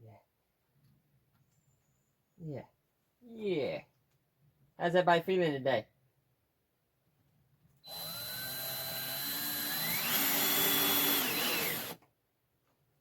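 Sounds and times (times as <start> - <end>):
power drill driving screw into wood: 7.8 - 12.0.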